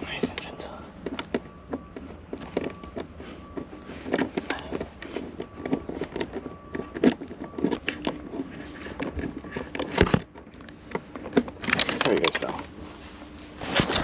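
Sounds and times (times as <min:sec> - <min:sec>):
car parts clicking and rattling: 0:00.0 - 0:14.0.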